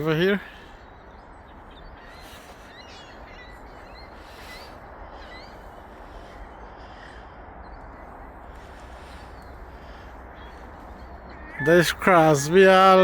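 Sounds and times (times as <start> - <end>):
steady low background noise: 0.0 - 13.0
short high bird chirps: 11.3 - 13.0.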